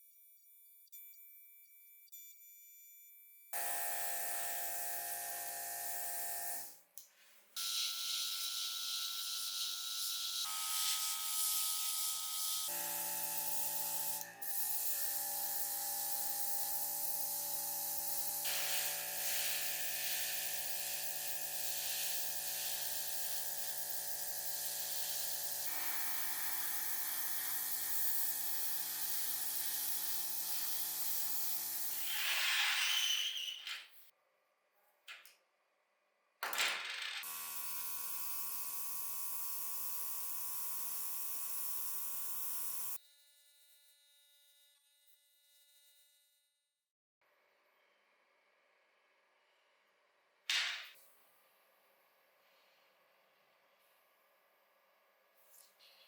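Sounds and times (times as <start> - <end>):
small electric motor running: 3.6 - 6.8, 7.6 - 32.5, 37.2 - 46.5.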